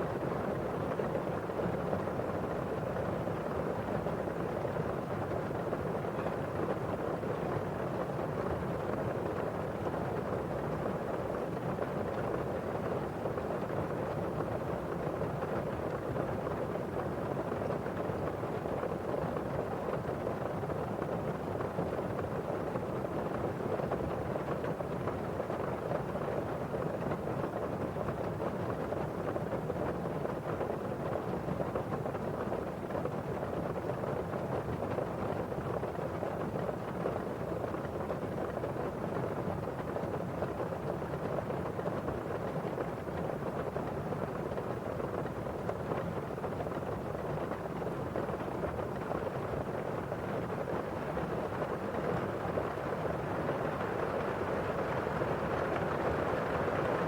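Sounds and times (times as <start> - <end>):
rain falling outside: 37.9 - 57.0
rain on window glass: 51.1 - 57.0.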